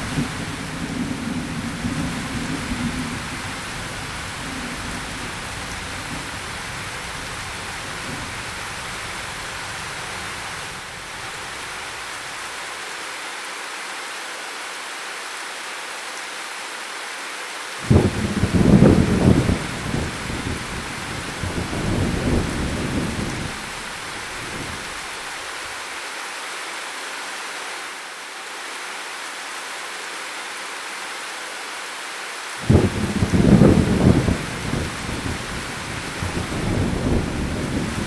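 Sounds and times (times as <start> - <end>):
low thunder rumble: 0.0 - 11.8, 17.9 - 25.2, 32.6 - 38.0
rain hiss: 0.0 - 38.0.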